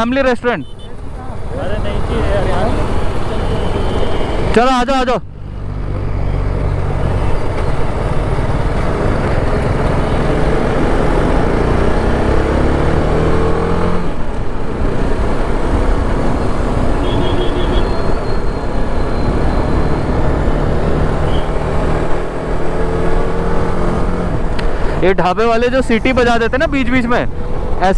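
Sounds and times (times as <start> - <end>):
motorcycle engine accelerating: 5.6 - 27.8.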